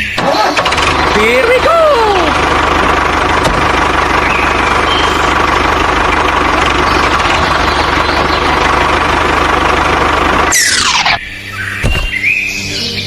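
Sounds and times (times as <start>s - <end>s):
tractor engine running: 0.0s - 12.8s.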